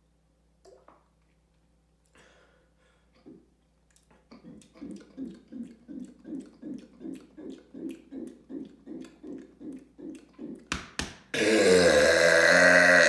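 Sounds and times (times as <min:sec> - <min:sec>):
gulping swallows: 0:03.2 - 0:10.7
loud burp: 0:11.3 - 0:13.0.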